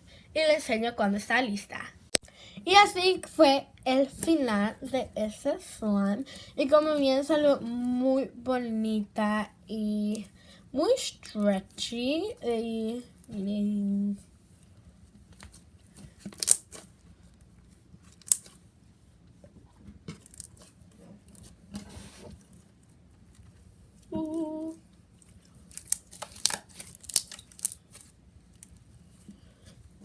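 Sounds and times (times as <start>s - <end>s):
slime popping and crackling: 16.2s - 16.8s, 18.1s - 18.6s, 25.6s - 28.8s.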